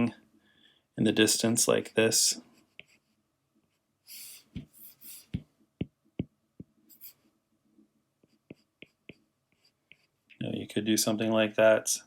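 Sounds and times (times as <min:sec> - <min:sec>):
stylus strokes on tablet screen: 0:01.3 - 0:07.3, 0:08.2 - 0:10.3
stylus tapping: 0:04.4 - 0:06.8.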